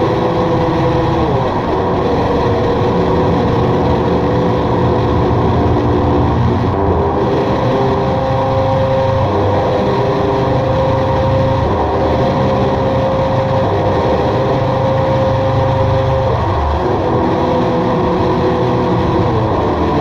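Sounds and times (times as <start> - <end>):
drone music with held tones: 0.0 - 20.0
low rumble: 1.8 - 7.0.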